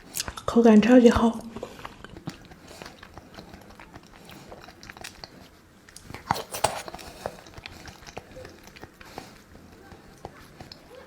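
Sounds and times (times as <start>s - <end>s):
person chewing and biting food: 1.5s - 11.0s.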